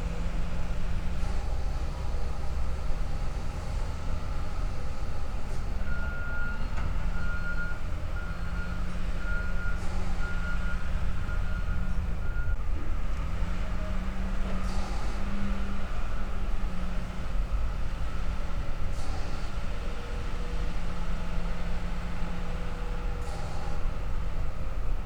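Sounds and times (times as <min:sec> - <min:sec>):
diesel engine running: 0:00.0 - 0:25.0
reversing alarm beeping: 0:05.7 - 0:12.6.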